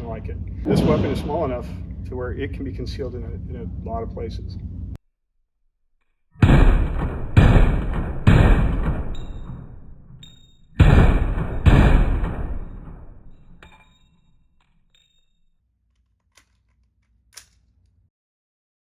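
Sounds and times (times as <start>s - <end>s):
gunshots with echo: 0.7s - 1.8s, 6.4s - 10.1s, 10.8s - 13.4s.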